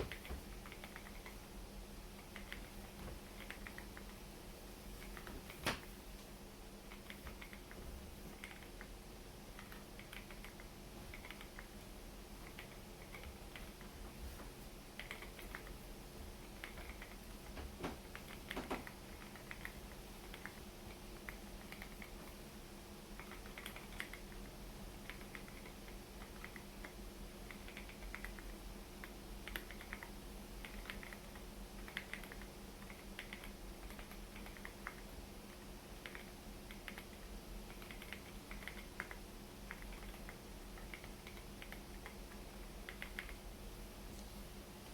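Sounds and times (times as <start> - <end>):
mechanical keyboard typing: 2.2 - 4.1, 6.9 - 8.9, 9.5 - 11.7, 12.4 - 13.9, 15.0 - 15.8, 16.6 - 17.2, 18.1 - 22.2, 23.2 - 28.5, 29.4 - 35.1, 36.0 - 43.4.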